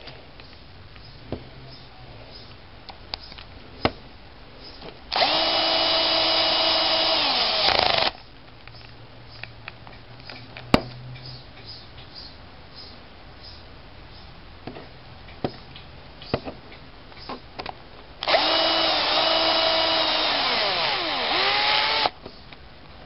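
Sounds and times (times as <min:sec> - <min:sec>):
cordless drill driving screw: 0:05.1 - 0:08.2, 0:18.2 - 0:22.2.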